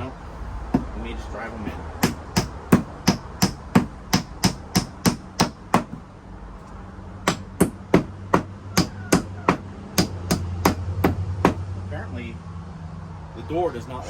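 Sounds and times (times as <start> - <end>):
hammer striking nails into wood: 2.0 - 6.1, 7.2 - 11.6.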